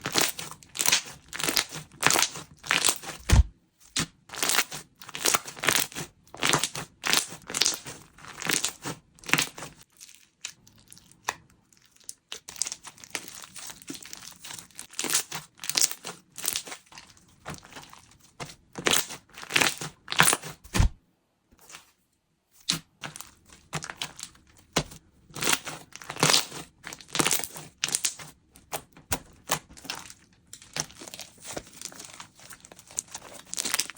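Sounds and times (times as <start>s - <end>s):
slime squishing and crackling: 0.0s - 21.0s, 22.6s - 33.9s.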